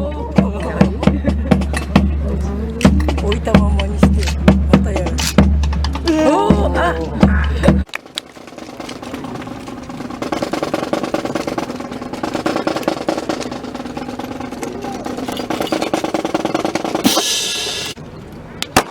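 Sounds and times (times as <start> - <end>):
music with drum roll: 0.0 - 18.0
loud hissing burst: 17.1 - 18.0.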